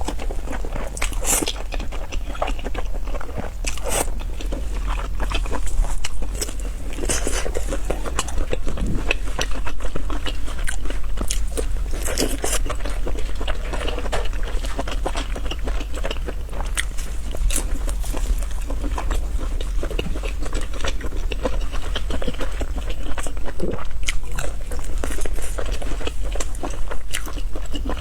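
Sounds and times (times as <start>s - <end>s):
crunchy chewing: 0.0s - 28.0s
low hum: 2.0s - 20.8s.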